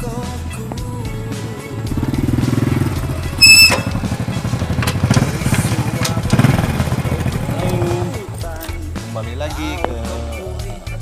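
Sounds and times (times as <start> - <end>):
small engine running: 1.1 - 8.5
high-pitched tone: 2.8 - 4.6.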